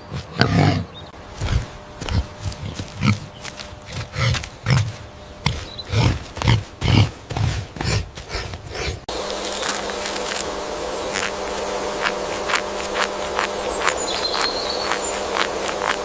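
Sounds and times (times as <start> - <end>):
animal grunting: 0.0 - 9.1
steady buzzing hum: 0.0 - 16.0.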